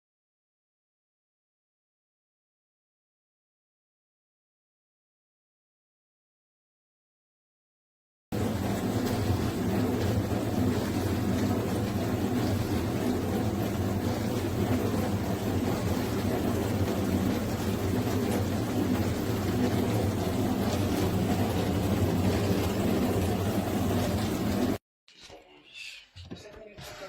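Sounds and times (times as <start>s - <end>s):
machine humming and hissing: 8.4s - 24.8s.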